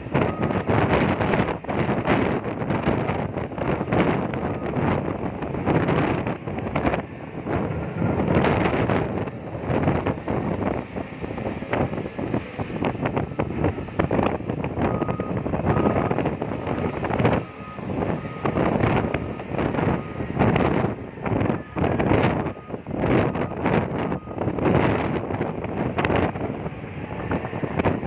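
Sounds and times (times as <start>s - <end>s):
excavator running and clattering: 0.0s - 28.0s
wind buffeting microphone: 0.0s - 28.0s
short beeps: 14.9s - 18.6s.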